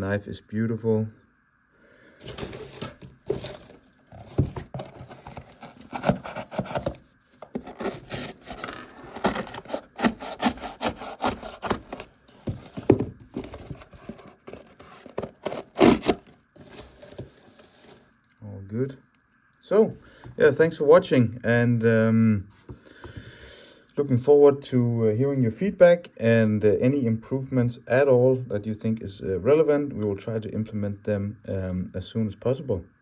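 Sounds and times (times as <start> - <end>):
multitool rubbing and scraping: 4.6 - 12.1.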